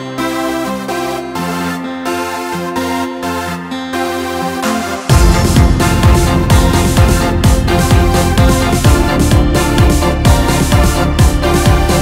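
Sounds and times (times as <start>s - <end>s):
electronic dance music: 0.0s - 12.0s
heavy kick drum and bass: 5.1s - 12.0s.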